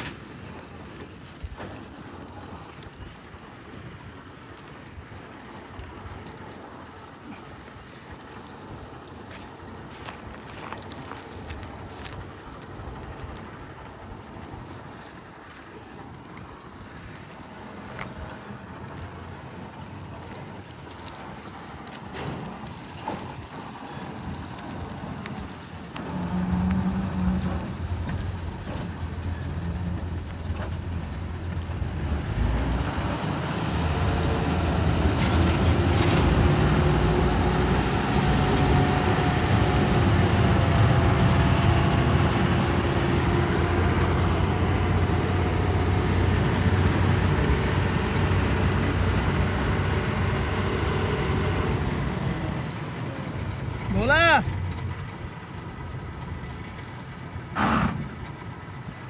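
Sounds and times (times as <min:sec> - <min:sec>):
harvesting machine engine drone: 0:23.4 - 0:59.0.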